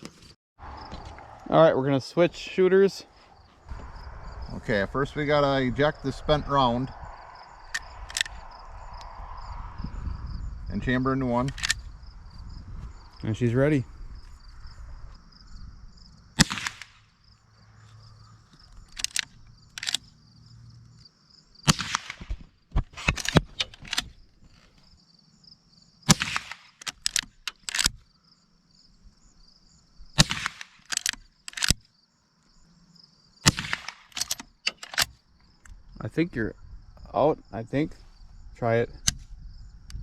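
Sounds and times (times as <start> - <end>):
crickets chirring: 0.6 - 40.0
rifle lever metallic clicks: 7.7 - 8.4, 11.5 - 11.9, 18.7 - 20.1, 23.0 - 24.1, 26.1 - 28.0, 30.2 - 31.8, 33.5 - 35.8, 39.0 - 39.2
rifle shots: 16.4 - 17.0, 21.7 - 22.4, 26.1 - 26.8, 30.2 - 31.0, 33.4 - 34.2.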